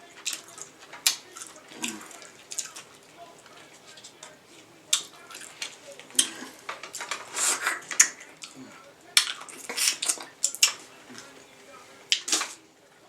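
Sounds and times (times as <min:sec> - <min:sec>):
crab shells cracking: 0:00.0 - 0:11.3, 0:12.1 - 0:12.6.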